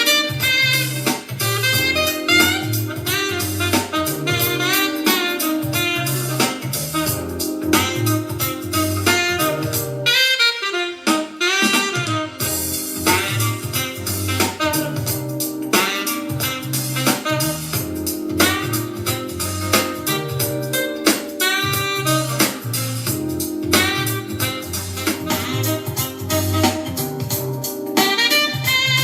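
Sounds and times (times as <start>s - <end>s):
instrumental music through small speaker: 0.0s - 29.0s.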